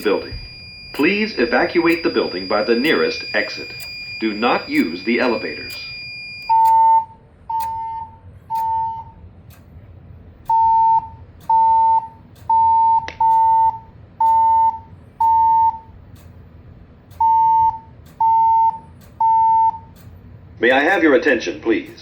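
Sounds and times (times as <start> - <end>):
fire alarm beeps: 0.0 - 9.6, 10.4 - 16.2, 17.1 - 20.1
sharp click: 9.5 - 9.8, 16.1 - 16.4, 19.0 - 19.3, 19.9 - 20.2.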